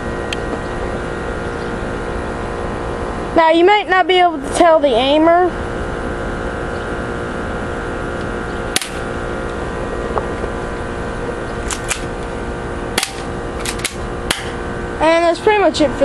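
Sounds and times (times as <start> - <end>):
steady background hum: 0.0 - 16.0
airsoft pistol shots: 8.7 - 9.1, 13.0 - 14.6.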